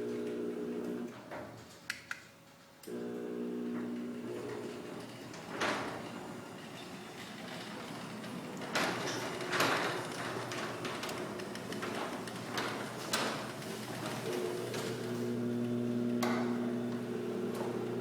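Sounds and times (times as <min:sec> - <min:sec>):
garage door opener hum: 0:00.0 - 0:01.8, 0:02.8 - 0:18.0
garage door clunks: 0:03.7 - 0:15.2, 0:16.1 - 0:18.0.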